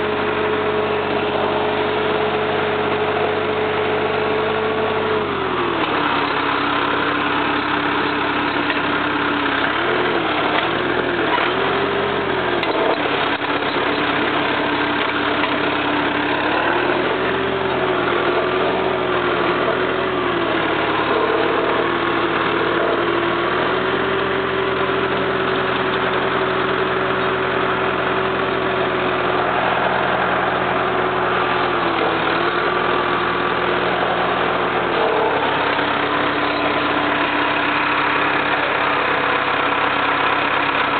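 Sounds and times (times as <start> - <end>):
diesel mower engine running: 0.0 - 40.9.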